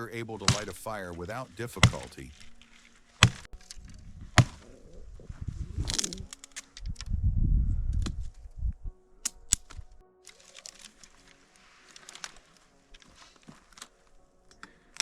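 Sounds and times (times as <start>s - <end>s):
sharp cracks: 0.0s - 3.8s, 4.4s - 4.7s, 5.9s - 6.9s
axe striking wood: 0.4s - 1.0s, 1.8s - 2.2s, 3.2s - 3.5s, 4.4s - 4.6s.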